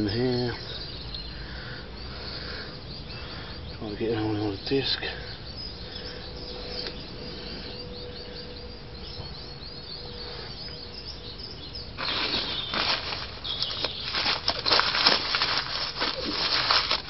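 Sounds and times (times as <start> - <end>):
faint steady hum: 0.0 - 17.0
small birds chirping: 0.0 - 17.0.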